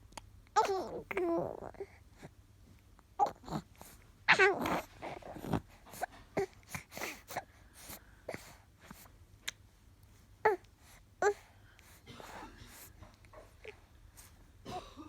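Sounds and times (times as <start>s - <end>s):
baby making vocal noises: 0.6s - 2.0s, 3.2s - 7.4s, 10.4s - 11.5s.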